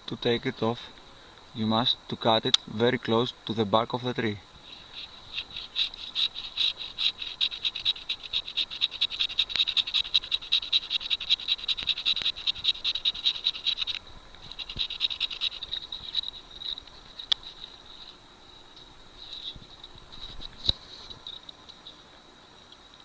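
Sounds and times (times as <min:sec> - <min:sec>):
animal calling in fast pulses: 0:04.7 - 0:16.8.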